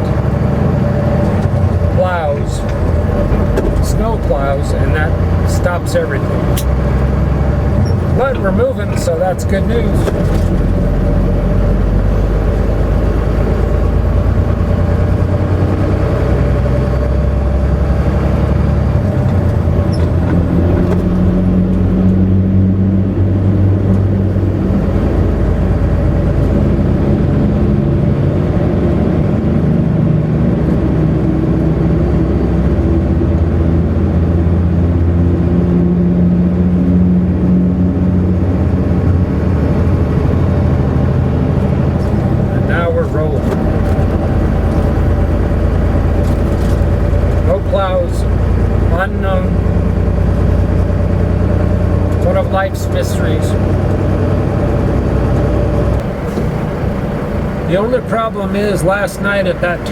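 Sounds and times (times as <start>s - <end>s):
road and tyre noise: 0.0s - 59.9s
truck diesel engine running: 0.0s - 59.9s.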